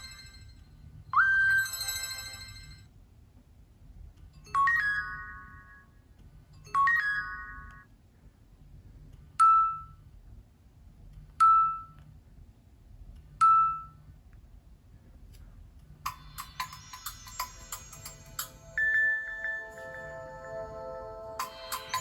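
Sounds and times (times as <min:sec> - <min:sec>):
phone chime chords: 0:16.4 - 0:22.0
high pings: 0:21.4 - 0:22.0.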